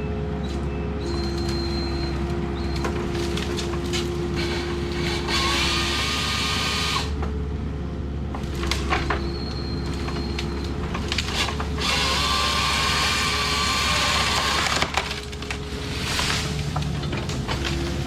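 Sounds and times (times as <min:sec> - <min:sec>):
diesel engine running: 0:00.0 - 0:18.0
saw whining through wood: 0:01.0 - 0:07.2, 0:08.6 - 0:16.6
wood cracking and snapping: 0:02.2 - 0:06.1, 0:08.4 - 0:18.0.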